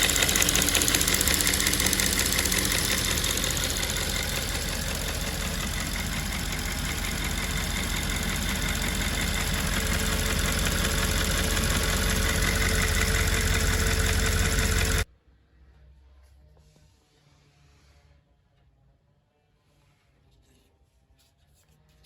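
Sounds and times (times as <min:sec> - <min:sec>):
fast even ticking: 0:00.0 - 0:15.0
car engine idling: 0:00.0 - 0:15.1.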